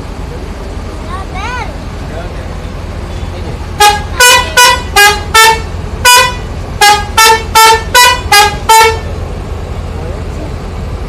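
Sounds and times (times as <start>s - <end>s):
steady low rumble: 0.0s - 11.0s
bus horn playing a tune: 3.8s - 9.2s.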